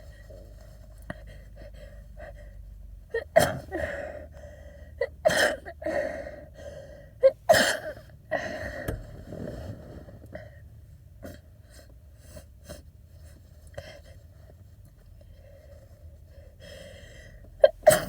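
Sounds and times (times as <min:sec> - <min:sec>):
person sneezing: 0:17.6 - 0:18.0.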